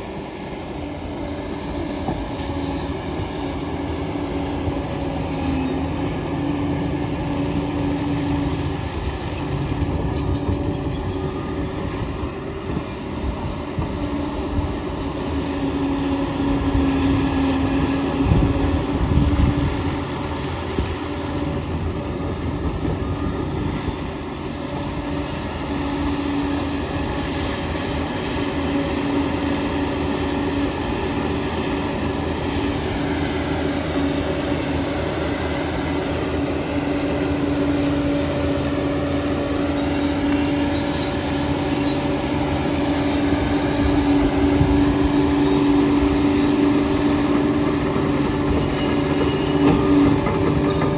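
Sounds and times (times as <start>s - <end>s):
diesel engine hum: 0.0s - 50.9s
steel tracks clanking: 0.0s - 50.9s.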